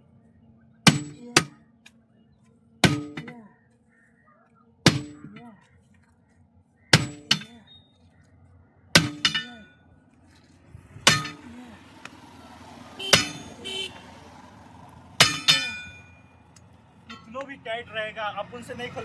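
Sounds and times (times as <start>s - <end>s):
hammer striking steel tools: 0.9s - 1.6s, 2.8s - 3.4s, 4.9s - 5.4s, 7.0s - 7.7s, 9.0s - 9.8s, 11.0s - 11.6s, 13.0s - 13.6s, 15.2s - 17.5s.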